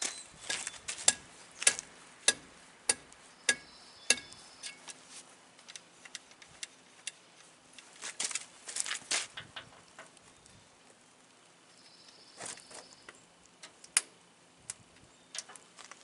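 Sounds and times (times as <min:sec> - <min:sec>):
sharp metallic clicks: 0:00.5 - 0:05.0.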